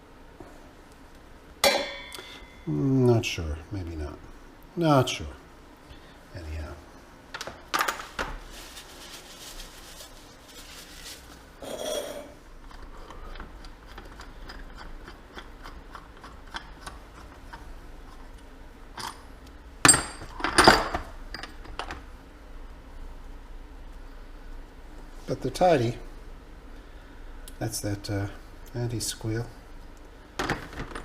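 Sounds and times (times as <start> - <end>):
ringing metal clanks: 1.6 - 2.7.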